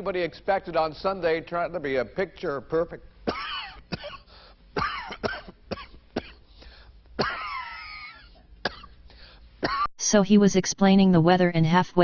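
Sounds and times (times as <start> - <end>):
man coughing: 3.3 - 6.5, 7.2 - 9.0, 9.6 - 9.9.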